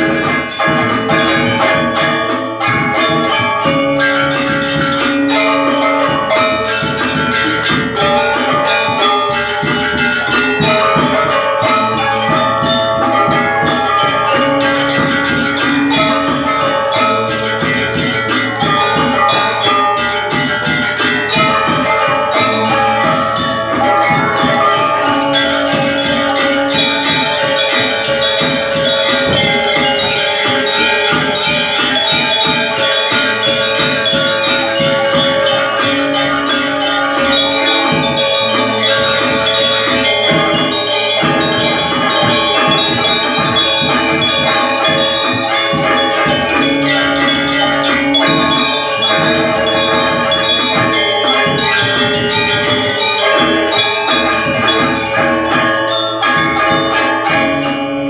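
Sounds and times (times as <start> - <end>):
bell-like metallic tones: 0.0 - 58.0
fast steady percussion: 0.0 - 58.0.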